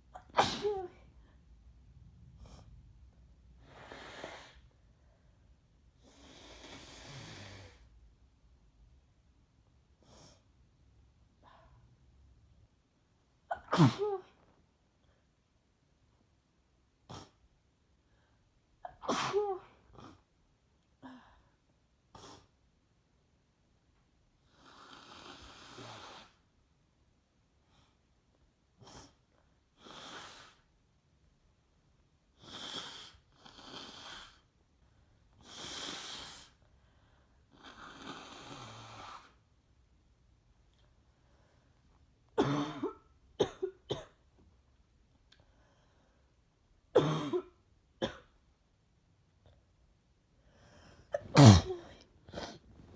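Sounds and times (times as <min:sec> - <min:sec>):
person sneezing: 0:00.2 - 0:01.1, 0:13.5 - 0:14.4, 0:18.9 - 0:19.8, 0:51.1 - 0:52.9
wheezy congested breathing: 0:03.6 - 0:07.9, 0:32.4 - 0:39.4, 0:50.4 - 0:52.9.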